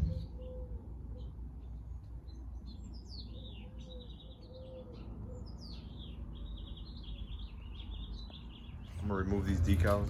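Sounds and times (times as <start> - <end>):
low background hum: 0.0 - 10.0
small birds chirping: 0.0 - 10.0.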